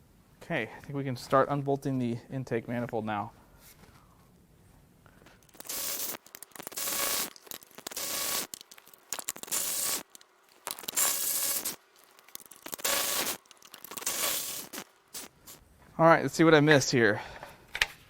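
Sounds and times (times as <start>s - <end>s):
ratchet clicking: 5.4s - 11.8s.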